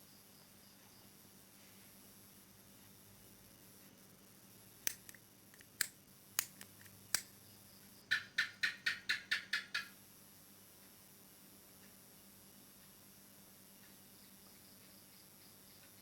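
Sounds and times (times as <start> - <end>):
sharp clicks: 4.9 - 7.3, 8.1 - 10.0.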